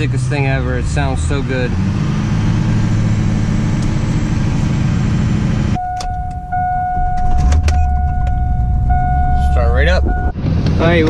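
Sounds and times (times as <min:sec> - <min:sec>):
diesel engine running and idling: 0:00.0 - 0:11.0
electronic warning tone: 0:05.8 - 0:10.4.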